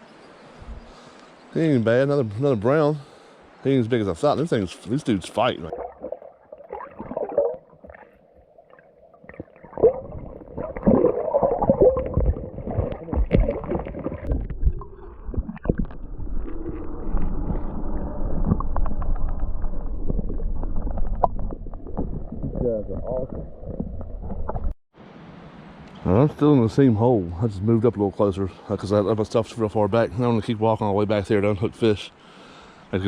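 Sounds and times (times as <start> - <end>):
water splashing from wading: 5.3 - 24.4
steady low rumble: 14.2 - 24.7.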